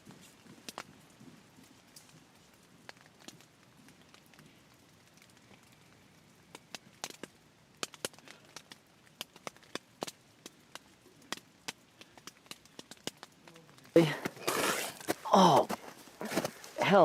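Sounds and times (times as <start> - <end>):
sharp clicks and snaps: 1.9 - 14.0.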